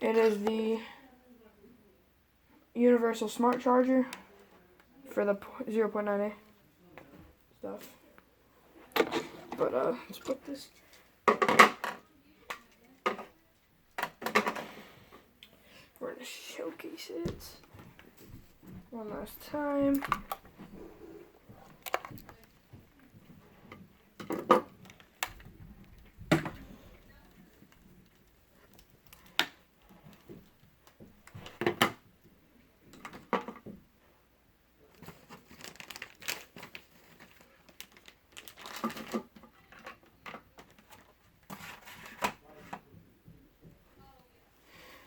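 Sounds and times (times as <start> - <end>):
plastic packaging crinkling: 34.9 - 39.3.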